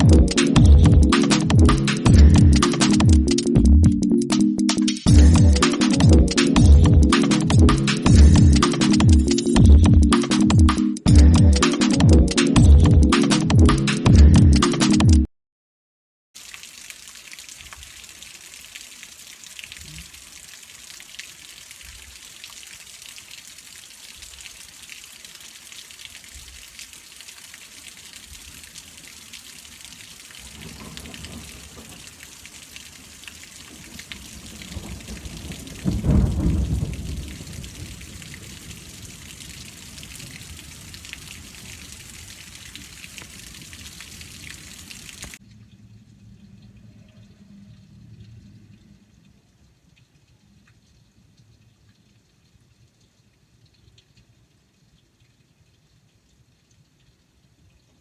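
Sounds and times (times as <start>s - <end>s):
steady rain: 0.0s - 3.8s, 5.1s - 10.3s, 16.4s - 58.0s
thunder rumbling: 30.4s - 44.8s.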